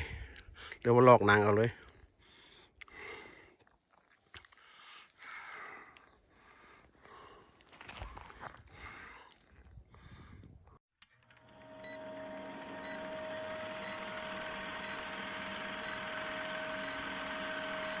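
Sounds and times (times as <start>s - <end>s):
steady electronic hum: 11.5s - 18.0s
short high beeps: 11.8s - 12.0s, 15.8s - 18.0s.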